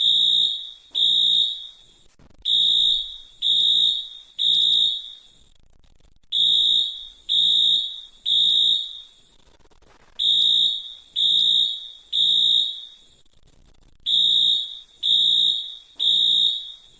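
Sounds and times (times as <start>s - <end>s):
fire alarm beeping: 0.0s - 1.9s, 2.5s - 5.4s, 6.3s - 9.2s, 10.2s - 13.2s, 14.1s - 16.9s.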